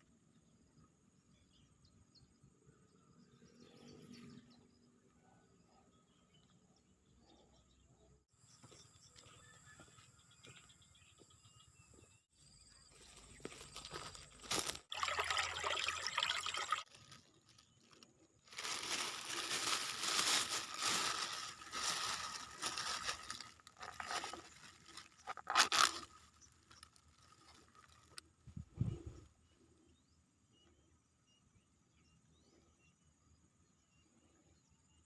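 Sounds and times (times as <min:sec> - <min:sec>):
rustling and crunching in mud and grass: 0:12.5 - 0:14.9, 0:16.8 - 0:29.2.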